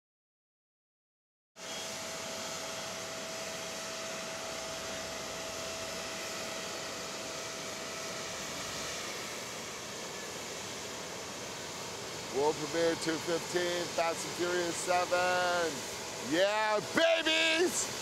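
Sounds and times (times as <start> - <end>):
faint steady whine: 1.6 - 18.0
steady rushing noise: 4.0 - 18.0.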